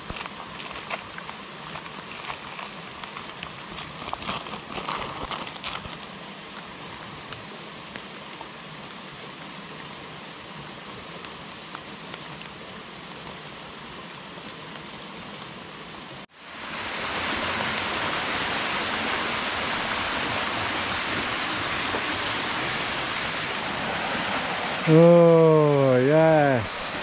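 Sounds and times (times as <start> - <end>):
rain falling: 0.0 - 27.0
waterfall rushing: 16.4 - 27.0.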